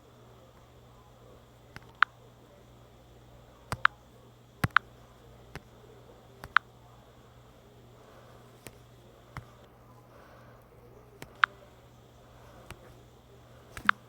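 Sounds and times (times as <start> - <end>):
kangaroo clucking clicks: 3.7 - 4.0, 4.6 - 4.9, 6.4 - 6.7, 13.8 - 14.0.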